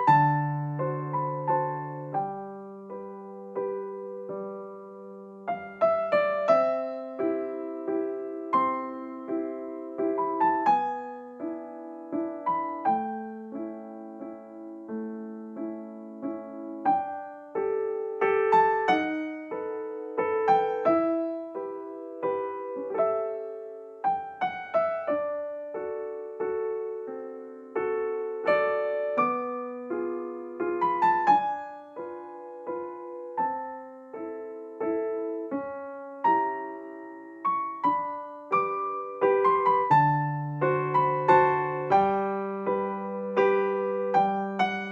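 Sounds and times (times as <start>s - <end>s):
solo piano music: 0.0s - 44.9s.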